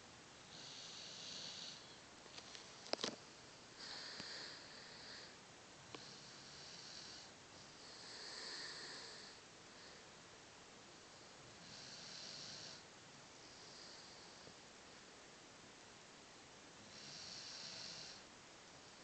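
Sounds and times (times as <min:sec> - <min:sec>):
dog snoring faintly: 0:00.5 - 0:03.2, 0:03.8 - 0:10.0, 0:11.1 - 0:14.6, 0:16.8 - 0:18.3.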